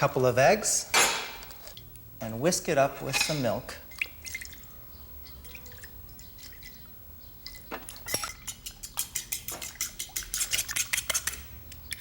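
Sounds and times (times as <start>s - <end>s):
whisk clicking against bowl: 8.4s - 11.4s.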